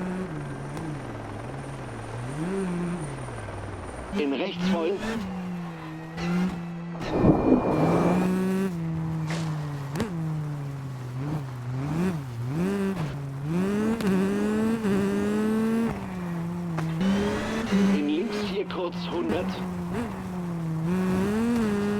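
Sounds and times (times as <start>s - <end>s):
gritty noise burst: 7.0s - 8.7s.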